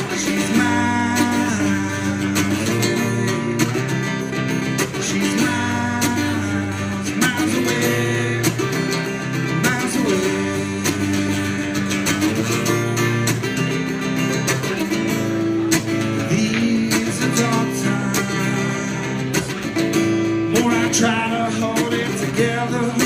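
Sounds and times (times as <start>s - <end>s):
acoustic guitar strumming chords: 0.0s - 23.0s.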